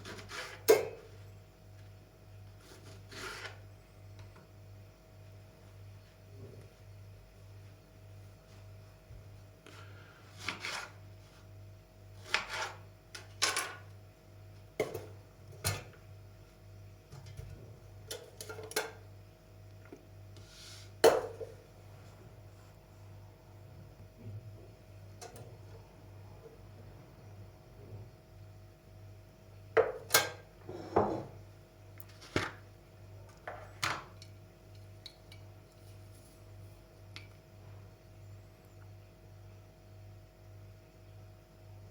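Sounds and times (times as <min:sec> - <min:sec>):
steady low hum: 0:13.9 - 0:41.9.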